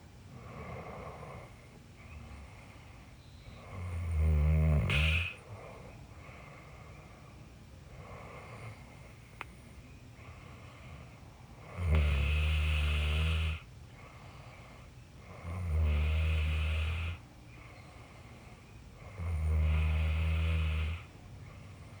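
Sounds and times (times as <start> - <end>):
faint steady background: 0.0 - 22.0
person snoring: 3.6 - 5.4, 11.6 - 13.6, 15.3 - 17.2, 19.0 - 21.1.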